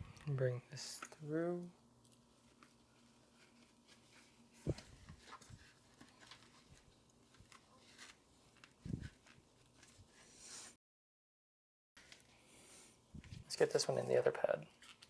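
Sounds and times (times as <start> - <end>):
light handling clicks and rustles: 2.0 - 10.0.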